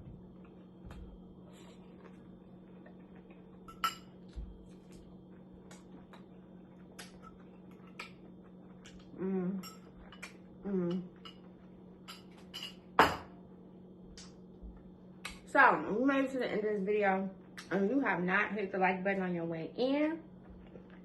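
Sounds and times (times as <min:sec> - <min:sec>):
steady low hum: 0:00.0 - 0:21.0
cutlery clinking against a dish: 0:03.7 - 0:04.1, 0:11.2 - 0:13.3.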